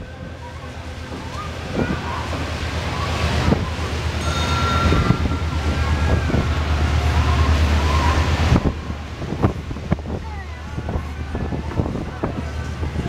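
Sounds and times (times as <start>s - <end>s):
wind buffeting microphone: 0.0s - 13.0s.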